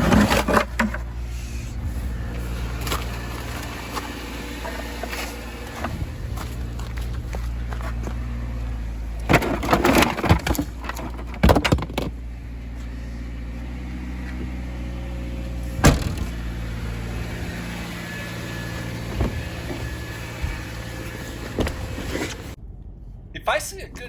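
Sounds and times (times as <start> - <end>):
vehicle engine running: 0.0 - 24.0
clattering knocks: 9.2 - 12.2.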